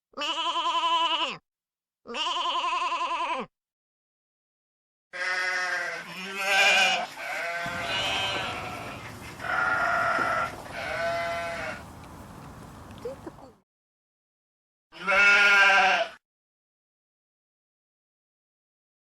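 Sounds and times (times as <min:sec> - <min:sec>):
sheep bleating: 0:00.2 - 0:01.4, 0:02.1 - 0:03.5, 0:05.2 - 0:13.3, 0:15.0 - 0:16.2.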